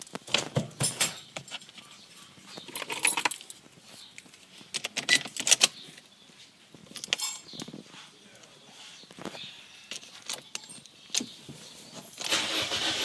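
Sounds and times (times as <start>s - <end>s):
small metal objects jangling: 2.7s - 3.6s, 6.9s - 7.6s, 10.0s - 11.0s.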